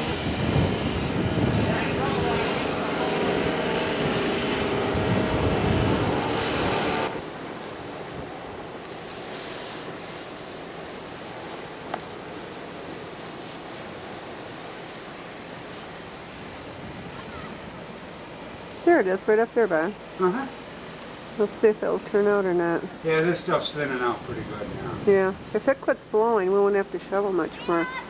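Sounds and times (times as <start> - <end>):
wind blowing on microphone: 0.0 - 7.3, 16.4 - 18.0, 24.0 - 25.6.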